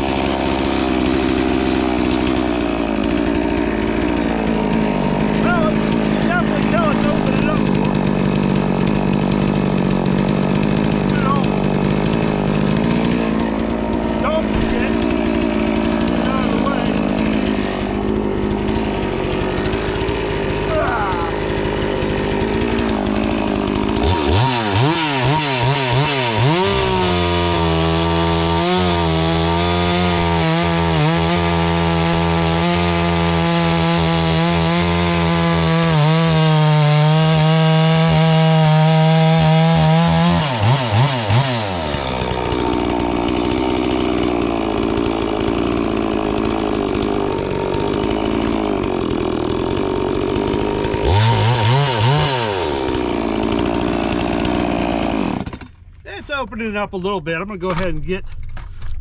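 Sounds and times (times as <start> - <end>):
chainsaw revving: 0.0 - 58.2.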